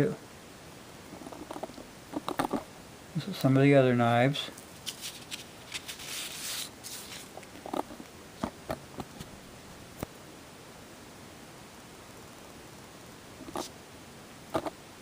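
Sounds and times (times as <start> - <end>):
soft rustling: 4.5 - 8.1.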